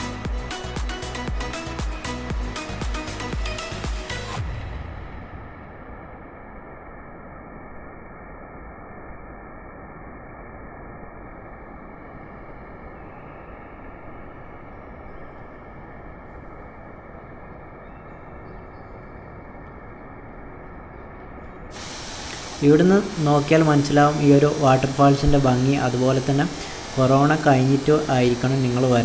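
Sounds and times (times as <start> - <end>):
waterfall rushing: 21.7 - 29.0.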